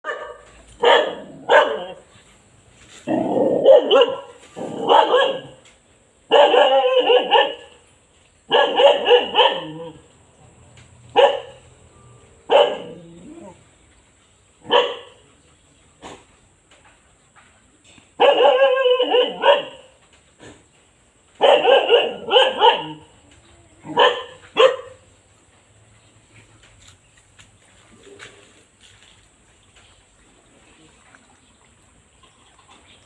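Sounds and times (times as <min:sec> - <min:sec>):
dog barking: 0:00.0 - 0:02.0, 0:03.5 - 0:05.6, 0:06.3 - 0:07.7, 0:08.5 - 0:10.0, 0:11.1 - 0:11.6, 0:12.5 - 0:13.0, 0:14.6 - 0:15.2, 0:18.2 - 0:19.9, 0:21.4 - 0:23.1, 0:23.9 - 0:25.0.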